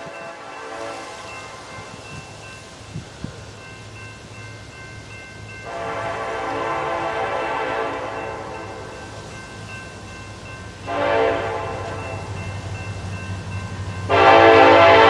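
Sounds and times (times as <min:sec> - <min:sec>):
locomotive air horn blasts: 0:00.0 - 0:01.7, 0:05.6 - 0:09.1, 0:10.9 - 0:12.4, 0:14.0 - 0:15.0.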